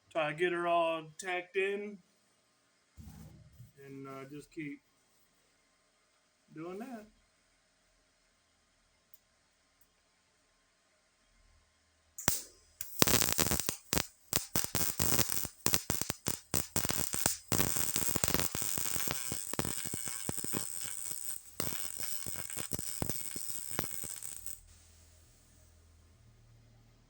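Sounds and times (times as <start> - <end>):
welding arc crackling: 12.2 - 25.6.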